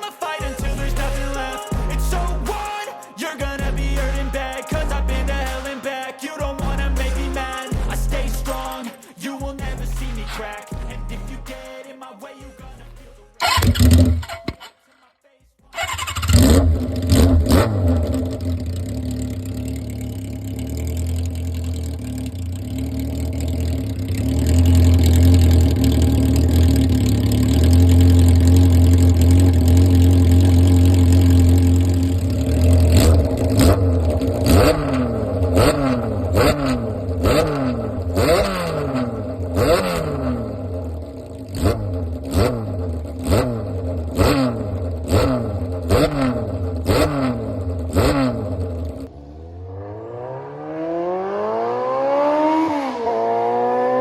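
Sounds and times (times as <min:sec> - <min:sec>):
motorcycle engine idling: 0:03.6 - 0:05.7, 0:13.4 - 0:14.4, 0:15.8 - 0:49.2
motorcycle throttle blips: 0:13.4 - 0:14.6, 0:15.8 - 0:50.2.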